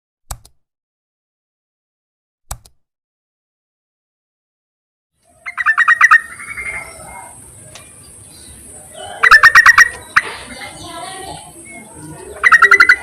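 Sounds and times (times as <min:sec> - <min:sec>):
bird calling: 0:05.2 - 0:13.0.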